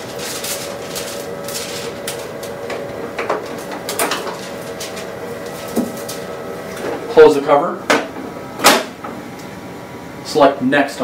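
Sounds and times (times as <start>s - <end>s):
printer humming: 0.0s - 11.0s.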